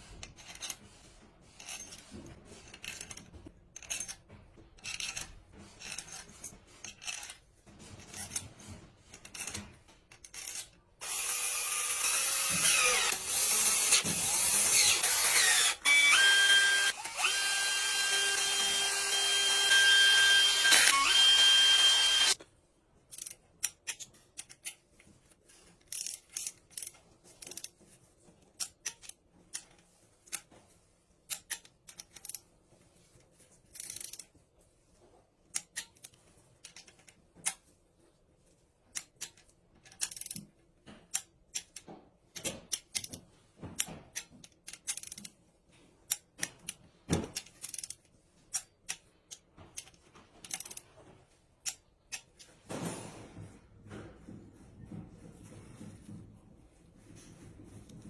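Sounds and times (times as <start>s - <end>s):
power tool: 11.0s - 22.4s.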